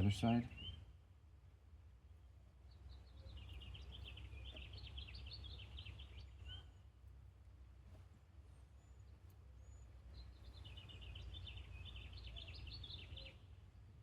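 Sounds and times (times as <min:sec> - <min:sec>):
distant songbird twittering: 0:00.0 - 0:01.0, 0:02.2 - 0:06.9, 0:08.7 - 0:14.0.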